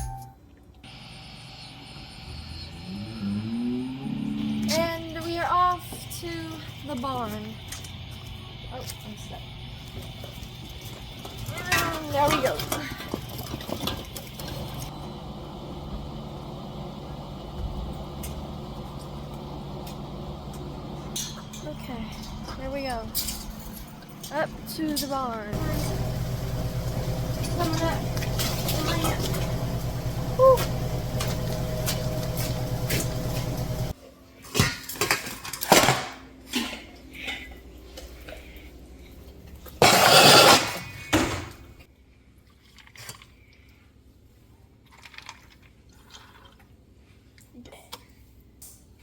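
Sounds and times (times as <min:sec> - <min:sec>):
vehicle engine humming: 0:00.9 - 0:11.4, 0:14.3 - 0:34.0
metallic clanks and clinks: 0:21.0 - 0:26.0.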